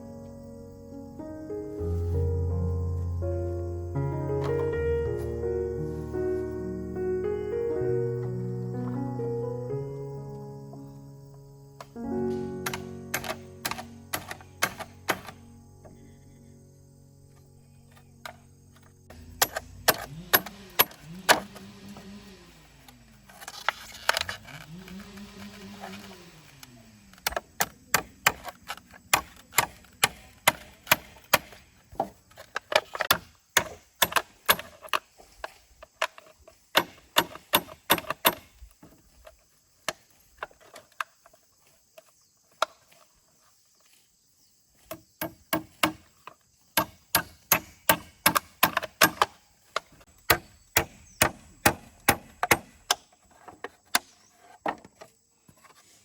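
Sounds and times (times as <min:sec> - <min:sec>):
hand tool striking wood: 0:12.6 - 0:15.4, 0:18.2 - 0:22.1, 0:27.2 - 0:39.2, 0:44.8 - 0:55.1.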